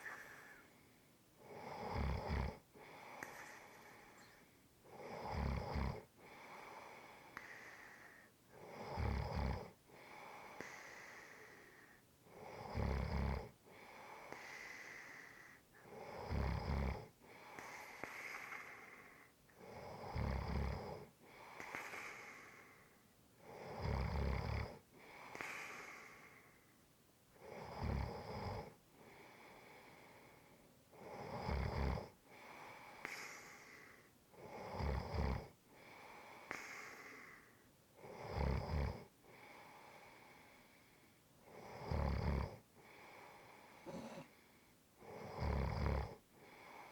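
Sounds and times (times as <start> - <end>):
person snoring: 1.4 - 2.6, 4.9 - 6.0, 15.9 - 17.1, 19.7 - 21.1, 43.8 - 44.4, 45.2 - 46.2.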